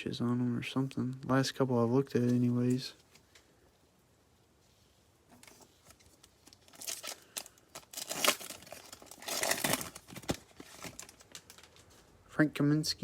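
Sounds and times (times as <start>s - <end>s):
foil wrapper tearing and crinkling: 5.8s - 11.8s.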